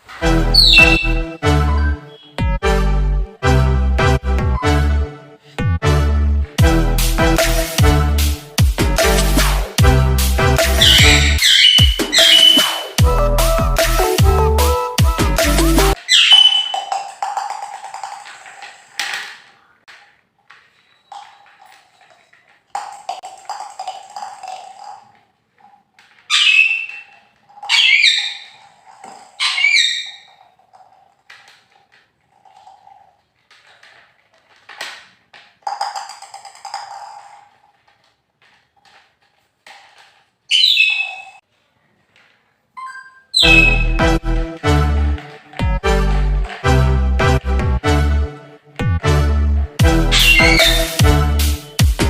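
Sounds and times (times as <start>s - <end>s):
parrot squawking: 0.5s - 2.4s, 10.7s - 13.0s, 16.0s - 16.9s, 26.3s - 30.5s, 40.5s - 41.4s, 43.3s - 44.0s, 49.9s - 51.0s
taps and rattling: 15.4s - 26.3s, 30.2s - 40.3s.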